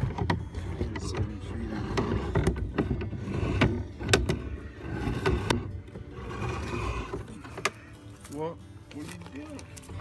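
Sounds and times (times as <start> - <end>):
cable scraping inside pipe: 0.0 - 8.2.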